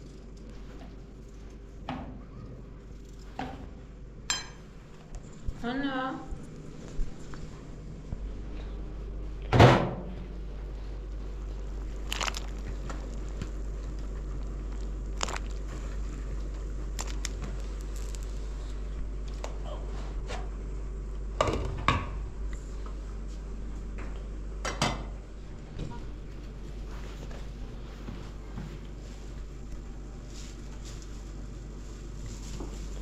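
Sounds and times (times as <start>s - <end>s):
steady low rumble: 2.6s - 21.4s.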